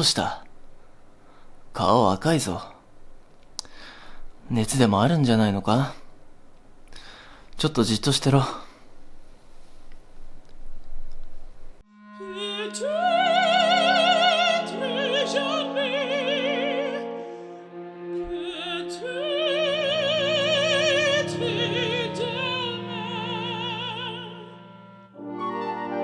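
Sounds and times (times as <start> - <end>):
orchestral chords: 11.8 - 26.0
operatic soprano singing: 12.0 - 25.0.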